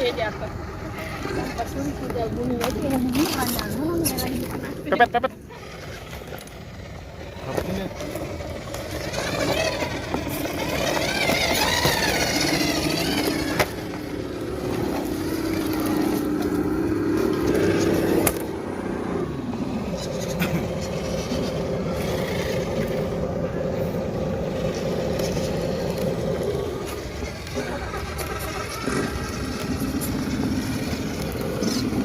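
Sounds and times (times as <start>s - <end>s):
toy truck motor whining: 2.6s - 32.0s.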